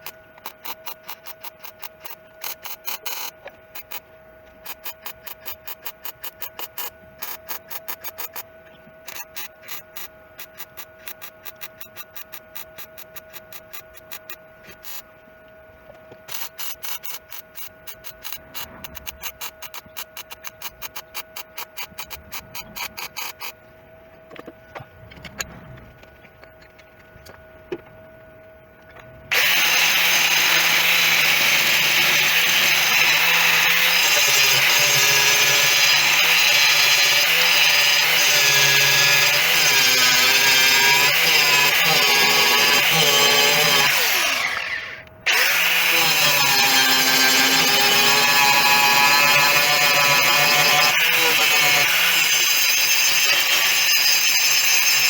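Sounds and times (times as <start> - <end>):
angle grinder on sheet steel: 29.3 - 55.0.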